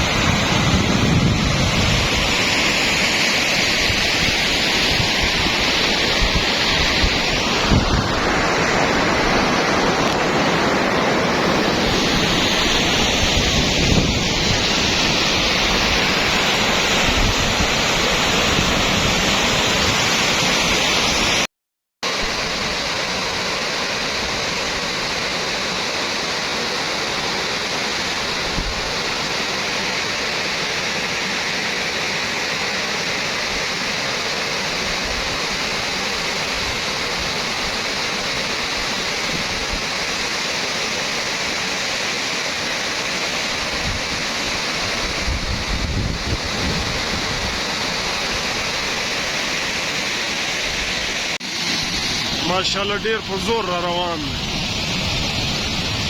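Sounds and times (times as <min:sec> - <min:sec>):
wind buffeting microphone: 0:00.0 - 0:02.4, 0:03.8 - 0:10.3, 0:44.9 - 0:47.6
floodwater roaring in stream: 0:00.0 - 0:56.0.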